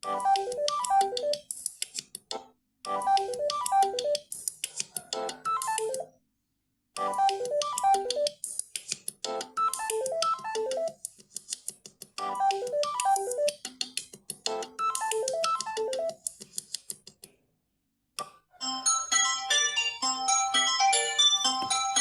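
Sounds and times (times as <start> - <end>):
ringtone falling notes melody: 0.0 - 1.5, 2.9 - 4.3, 5.3 - 6.0, 7.0 - 8.4, 9.4 - 11.0, 12.2 - 13.6, 14.5 - 16.2, 18.6 - 22.0
high chiming ringtone: 18.6 - 22.0.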